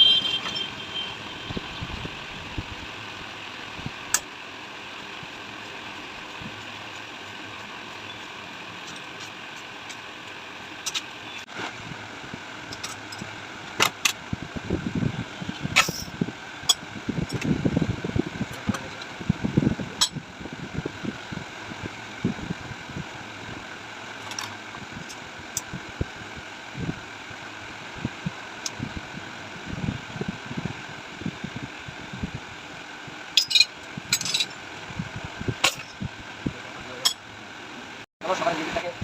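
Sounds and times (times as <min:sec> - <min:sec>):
workshop hum: 0:00.0 - 0:39.0
tools clinking on metal: 0:33.4 - 0:34.6.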